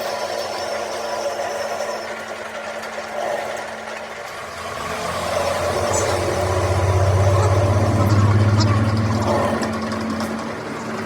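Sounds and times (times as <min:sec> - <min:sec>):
steady mechanical noise: 0:00.0 - 0:11.0
machine motor humming: 0:04.3 - 0:11.0.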